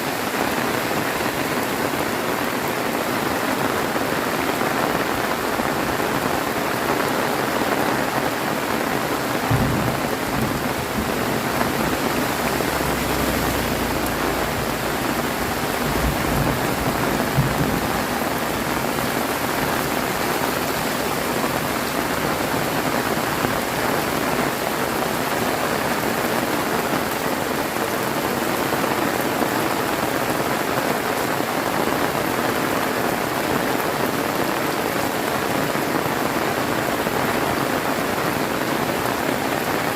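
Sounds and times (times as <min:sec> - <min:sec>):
heavy rain pouring: 0:00.0 - 0:39.9
low rumbles: 0:09.3 - 0:22.0.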